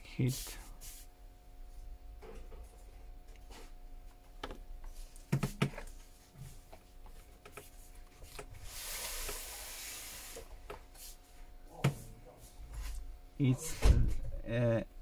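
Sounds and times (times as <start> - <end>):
steady low hum: 0.0 - 15.0
hiss: 8.6 - 10.5.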